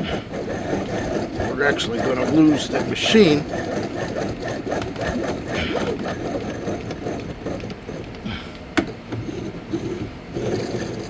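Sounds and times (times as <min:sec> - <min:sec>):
key machine cutter chattering: 0:00.0 - 0:11.0.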